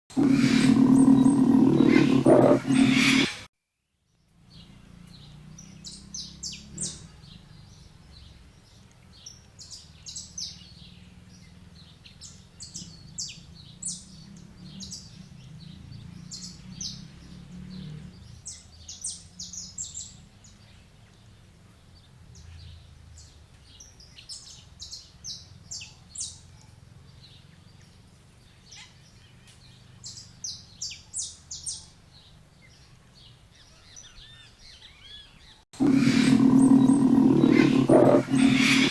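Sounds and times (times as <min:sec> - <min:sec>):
finch chirping: 0:00.2 - 0:03.4, 0:35.8 - 0:38.9.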